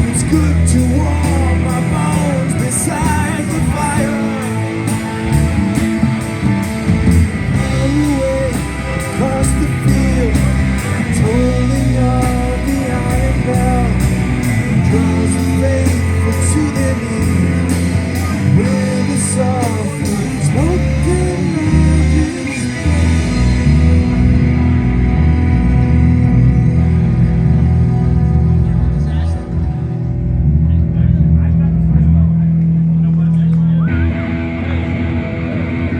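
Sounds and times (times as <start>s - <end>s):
drums and cymbals: 0.0s - 24.2s
bass line: 0.0s - 35.9s
electric guitar lead: 0.0s - 35.9s.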